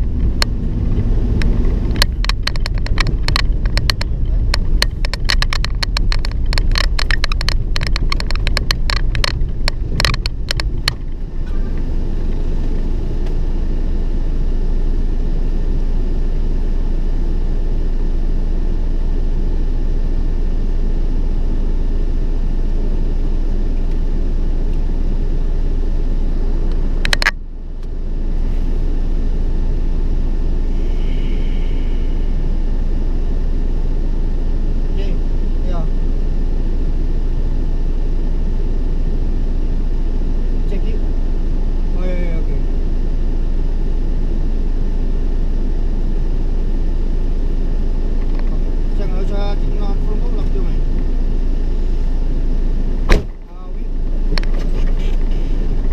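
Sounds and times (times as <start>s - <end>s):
road and engine rumble: 0.0s - 55.9s
sharp knock: 53.1s - 53.3s.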